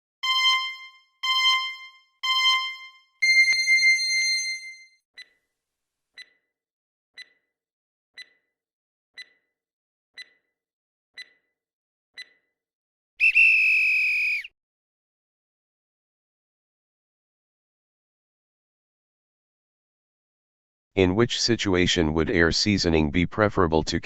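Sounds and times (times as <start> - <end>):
electronic buzzer tone: 0.2 - 4.0
countdown timer ticks: 0.2 - 4.4, 6.2 - 6.4, 7.2 - 7.5, 8.2 - 8.5, 9.2 - 9.5, 10.2 - 10.5, 11.2 - 11.5, 12.2 - 12.4.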